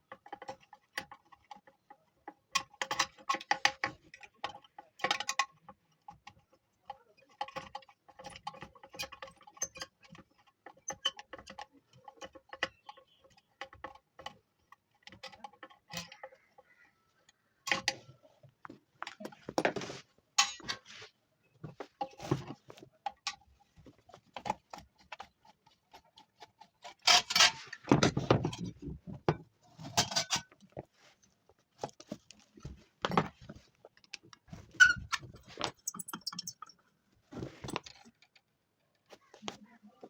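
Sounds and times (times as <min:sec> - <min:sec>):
metal parts and tools clinking: 0:19.0 - 0:20.9, 0:21.9 - 0:30.8, 0:31.8 - 0:36.8, 0:37.4 - 0:39.1.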